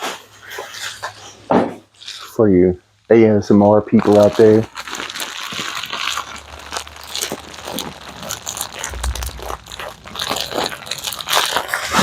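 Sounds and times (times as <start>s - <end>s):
packaging crinkling and tearing: 1.9s - 2.4s, 3.8s - 12.0s
dull low thump: 8.9s - 9.7s.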